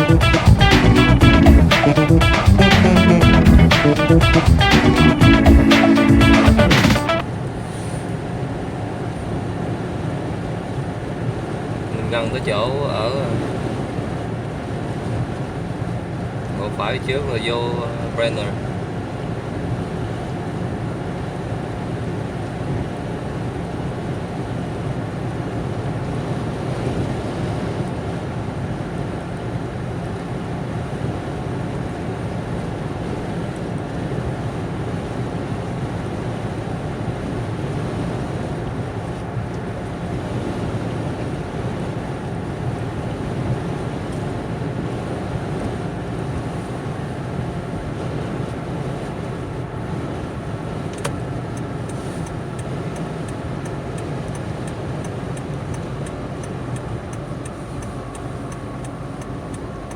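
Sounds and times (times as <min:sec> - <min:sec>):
car driving inside cabin: 0:31.1 - 0:59.9
turn signal ticking: 0:51.0 - 0:59.9.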